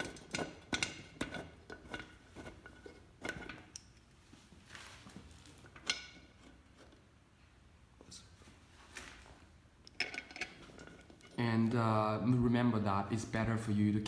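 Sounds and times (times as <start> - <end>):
soft rustle: 4.1 - 5.8, 8.0 - 9.5
metal bolts clicking: 9.9 - 11.4.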